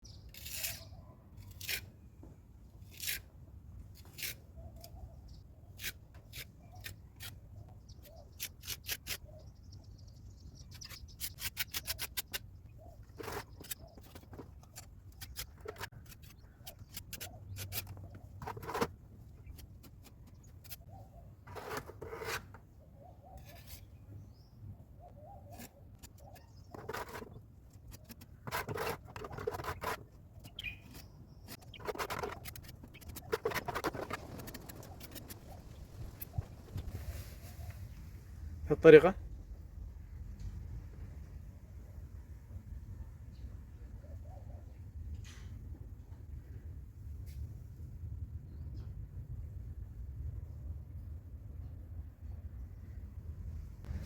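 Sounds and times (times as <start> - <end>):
hand tool scraping brickwork: 0.3 - 2.0, 2.8 - 3.4, 8.1 - 9.2, 10.7 - 22.7, 23.4 - 23.9, 25.5 - 37.3.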